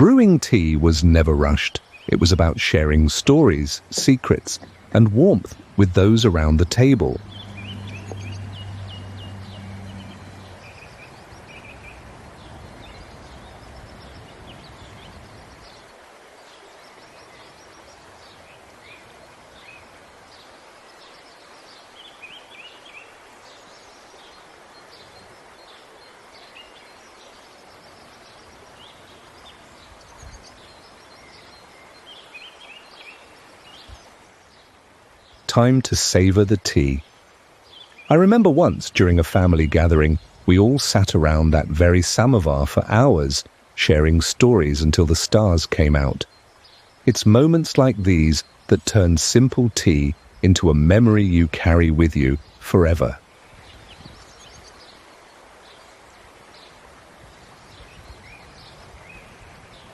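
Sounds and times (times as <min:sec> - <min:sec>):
small birds chirping: 0:00.0 - 0:59.9
steady background hiss: 0:00.0 - 0:59.9
low hum: 0:02.1 - 0:11.0.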